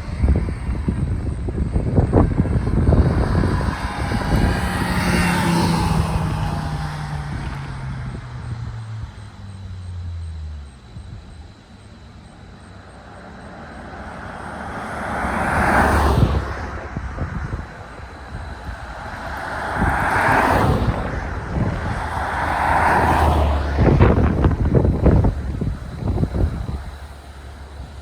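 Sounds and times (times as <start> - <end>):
wind buffeting microphone: 0.0 - 9.4, 15.0 - 28.0
car engine driving past: 2.0 - 11.1, 13.2 - 28.0.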